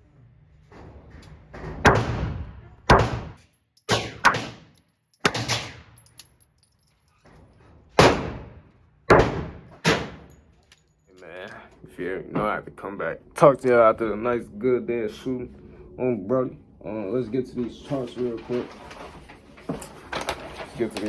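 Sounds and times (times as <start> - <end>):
gunshots with ringing tail: 1.9 - 6.0, 8.0 - 10.3.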